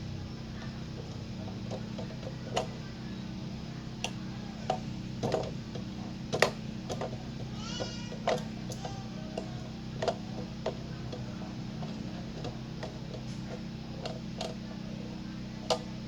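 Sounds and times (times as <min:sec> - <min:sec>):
steady low hum: 0:00.0 - 0:16.0
light clicks and knocks: 0:04.0 - 0:14.9.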